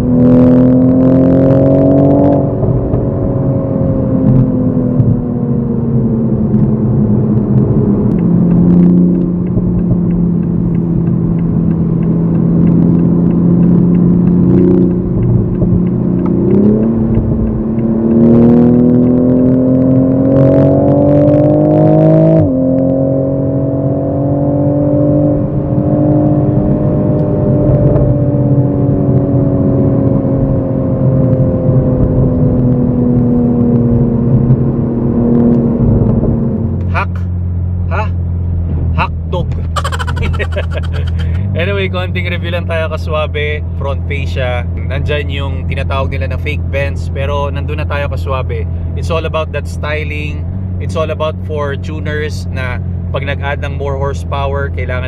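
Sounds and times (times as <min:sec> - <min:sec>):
car engine accelerating: 0:00.0 - 0:42.8.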